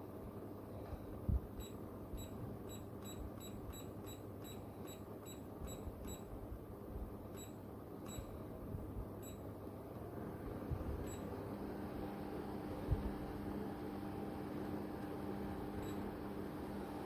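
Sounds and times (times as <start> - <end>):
fan rushing air: 0.0 - 17.0
short high-pitched beeps: 1.6 - 6.3.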